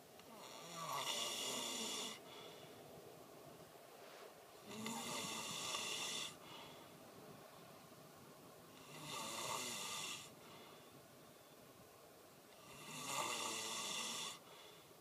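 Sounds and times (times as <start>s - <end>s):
person snoring: 0.3s - 2.2s, 4.6s - 6.4s, 8.8s - 10.3s, 12.6s - 14.4s.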